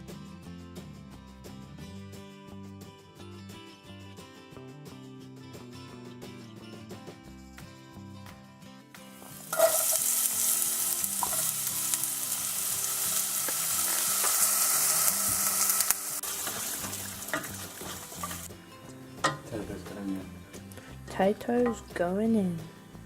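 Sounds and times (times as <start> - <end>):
background music: 0.0 - 23.0
food sizzling in a pan: 9.1 - 21.9.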